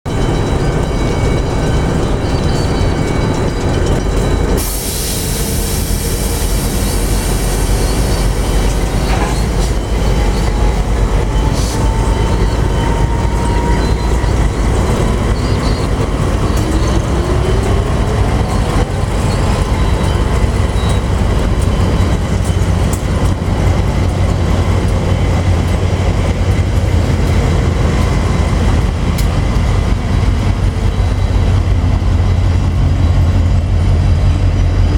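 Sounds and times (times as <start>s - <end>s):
freight train rumbling: 0.0s - 34.9s
wheel squeals: 1.0s - 28.7s, 30.5s - 33.6s
air brake hiss: 4.6s - 7.9s.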